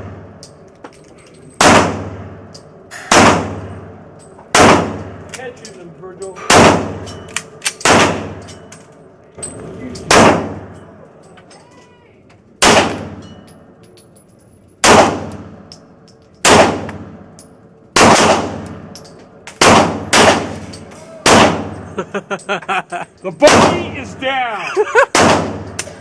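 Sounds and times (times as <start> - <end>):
pistol shots with echo: 1.6 - 3.9, 4.5 - 5.3, 6.4 - 8.4, 10.0 - 10.8, 12.6 - 13.3, 14.8 - 15.7, 16.4 - 17.2, 18.0 - 18.9, 19.5 - 21.9, 23.4 - 24.0, 25.1 - 25.8.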